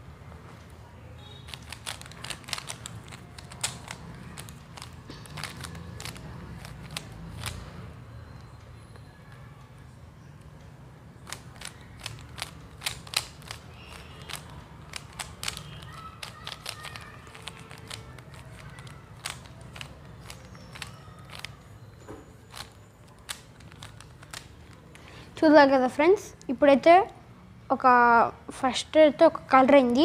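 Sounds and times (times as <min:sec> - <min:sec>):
puzzle cube clicking: 0:01.5 - 0:07.8, 0:11.2 - 0:21.6, 0:22.4 - 0:25.1.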